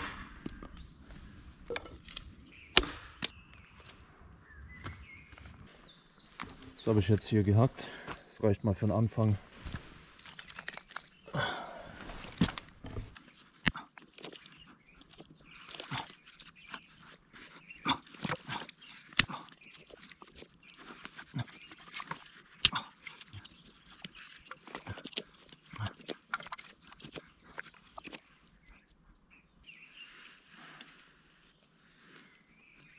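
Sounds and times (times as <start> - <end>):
sticks snapping and cracking: 1.7 - 4.0, 9.6 - 11.3, 17.9 - 20.5
rustle of forest litter: 9.1 - 13.4, 29.6 - 32.9.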